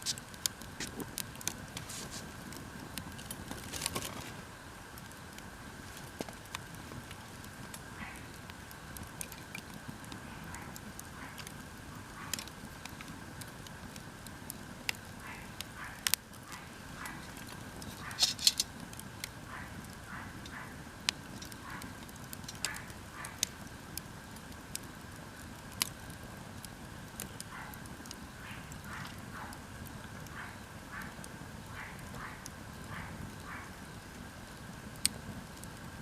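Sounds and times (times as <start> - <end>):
wood fire crackling: 0.0 - 36.0.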